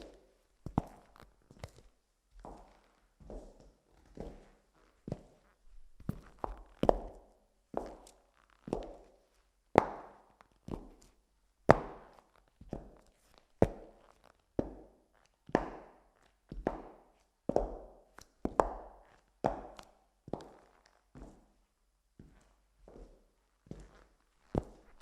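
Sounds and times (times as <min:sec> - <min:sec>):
high heels clicking on hard floor: 0:13.6 - 0:21.6, 0:22.2 - 0:25.0.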